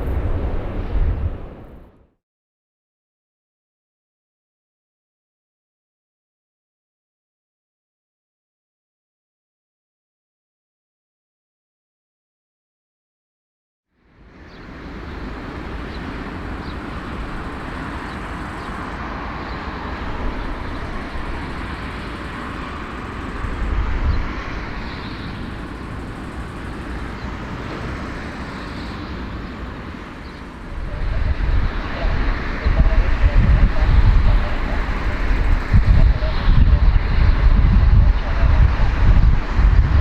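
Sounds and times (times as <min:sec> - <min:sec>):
engine rumbling: 0:14.2 - 0:40.0.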